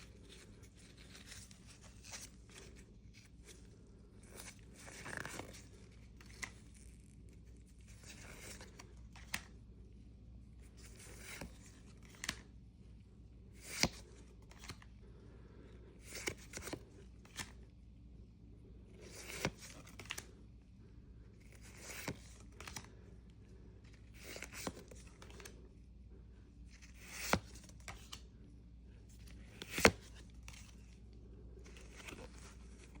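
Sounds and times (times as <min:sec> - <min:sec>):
cards sliding and flicking: 0:04.2 - 0:09.6, 0:10.8 - 0:12.5, 0:13.6 - 0:14.9, 0:16.0 - 0:17.6, 0:19.0 - 0:20.4, 0:21.4 - 0:23.0, 0:23.9 - 0:25.6, 0:26.8 - 0:28.3, 0:29.1 - 0:33.0.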